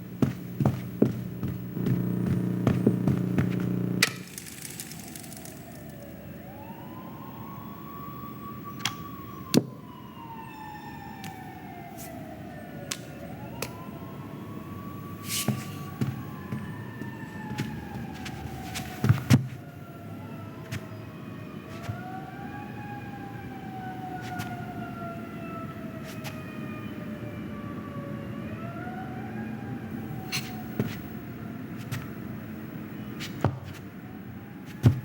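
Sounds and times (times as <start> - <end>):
loud low buzz: 0.0 - 5.9
siren wailing: 1.8 - 31.8.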